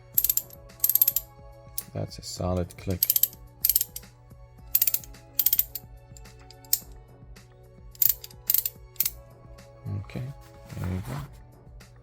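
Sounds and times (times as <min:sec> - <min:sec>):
ratcheting wrench clicking: 0:00.0 - 0:01.9, 0:02.6 - 0:04.1, 0:04.7 - 0:07.0, 0:08.0 - 0:09.2.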